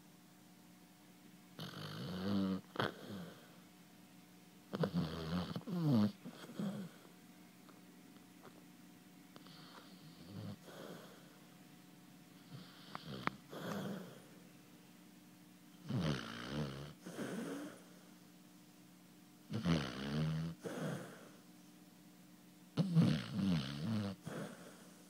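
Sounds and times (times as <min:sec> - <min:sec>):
dog snoring: 0:01.6 - 0:03.6, 0:04.7 - 0:07.1, 0:09.4 - 0:11.4, 0:12.4 - 0:14.4, 0:15.8 - 0:18.1, 0:19.5 - 0:21.4, 0:22.8 - 0:25.0.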